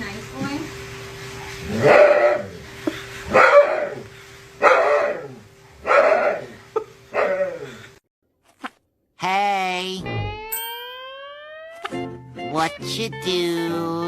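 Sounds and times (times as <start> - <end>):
dog barking: 1.8 - 2.5, 3.3 - 4.0, 4.6 - 6.5.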